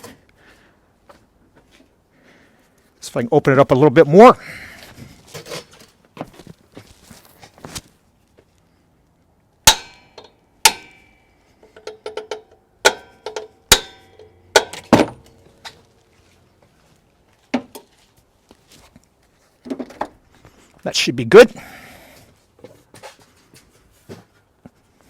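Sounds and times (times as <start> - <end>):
metal-on-metal clangs: 9.6 - 15.8.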